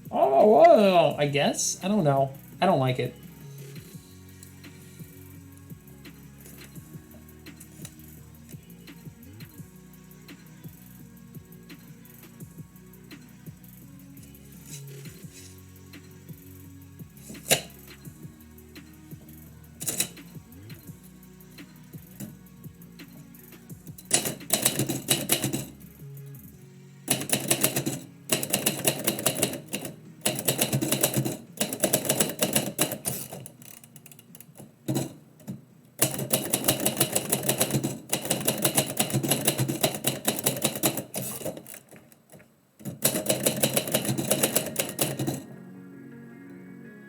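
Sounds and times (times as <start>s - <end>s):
quiet background music: 0.0s - 47.0s
typewriter keys striking: 17.2s - 17.8s, 19.8s - 20.4s, 23.9s - 25.8s, 27.1s - 45.5s.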